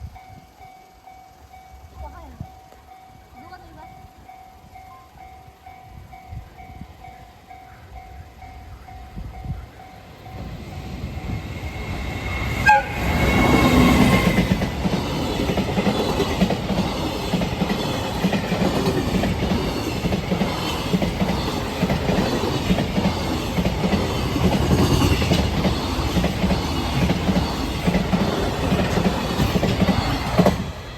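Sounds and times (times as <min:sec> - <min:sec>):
train rumble: 0:00.0 - 0:30.9
locomotive horn: 0:12.6 - 0:14.2.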